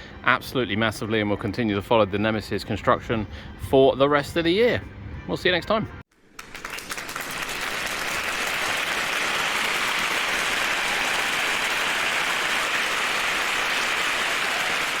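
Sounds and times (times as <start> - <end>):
applause: 6.2 - 15.0.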